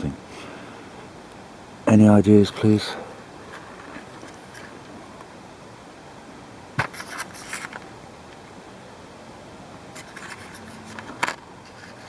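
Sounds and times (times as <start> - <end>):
faint steady hiss: 0.0 - 12.0
handling clicks and scrapes: 3.4 - 5.3, 6.8 - 7.9, 10.0 - 12.0.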